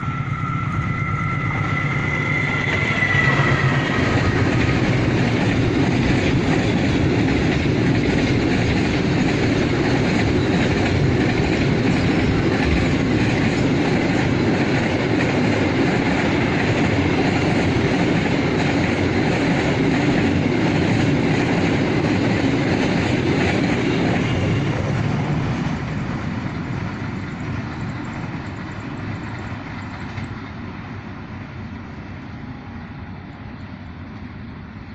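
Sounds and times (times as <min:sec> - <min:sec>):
high steady tones: 0:00.0 - 0:06.0
freight train wheels rumbling: 0:00.0 - 0:34.9.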